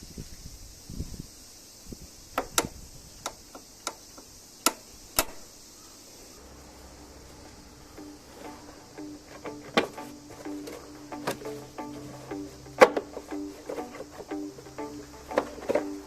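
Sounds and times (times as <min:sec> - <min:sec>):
faint steady hiss: 0:00.0 - 0:16.0
sharp clicks and taps: 0:09.3 - 0:16.0.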